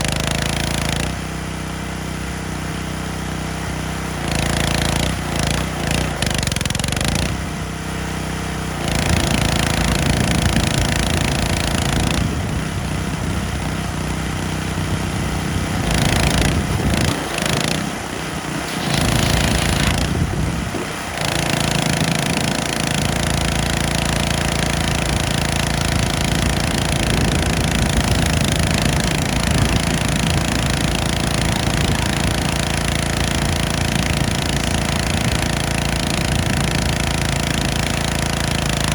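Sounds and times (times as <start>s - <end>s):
small engine droning: 0.0s - 38.9s
high-pressure water spray hiss: 14.0s - 22.6s.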